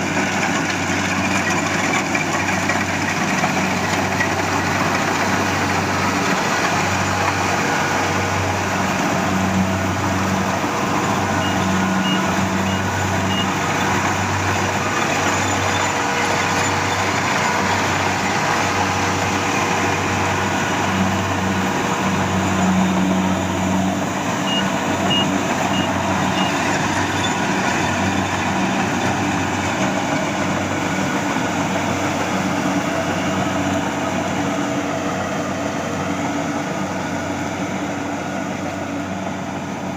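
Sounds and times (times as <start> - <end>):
harvester engine throbbing: 0.0 - 39.9
high warning beeps: 11.3 - 13.6, 24.4 - 26.6.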